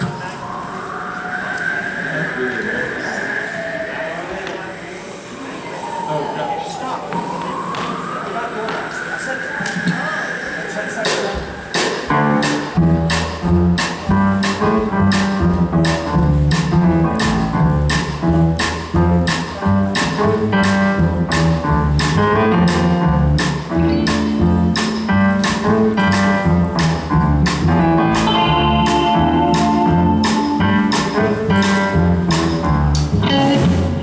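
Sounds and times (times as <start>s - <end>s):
drum strokes: 10.9s - 34.0s
swing band playing: 11.2s - 34.0s.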